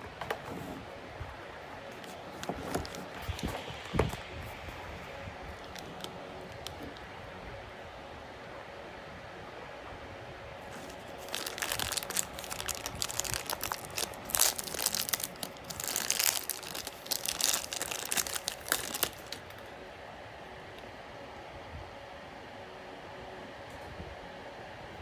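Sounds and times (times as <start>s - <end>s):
packaging crinkling and rustling: 0.0s - 7.1s, 10.6s - 19.7s.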